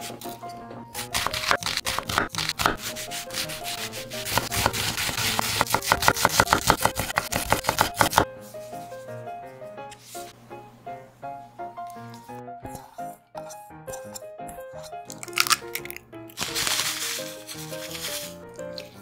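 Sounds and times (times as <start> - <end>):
soft background music: 0.0 - 19.0
hand rubbing and scraping food: 1.0 - 8.8, 11.9 - 19.0.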